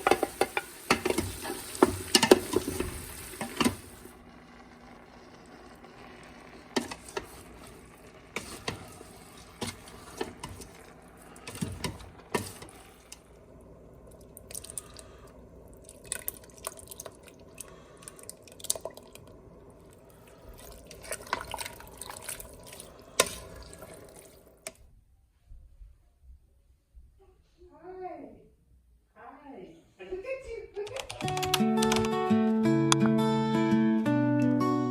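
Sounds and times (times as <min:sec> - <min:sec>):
water running and splashing: 0:00.0 - 0:04.1, 0:15.7 - 0:17.6, 0:20.2 - 0:24.6.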